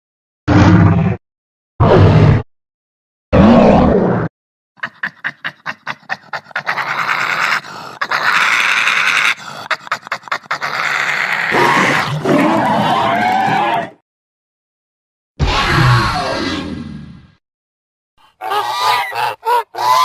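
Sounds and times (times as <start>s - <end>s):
lower rough breathing sound: 7.5s - 8.1s, 9.3s - 10.6s.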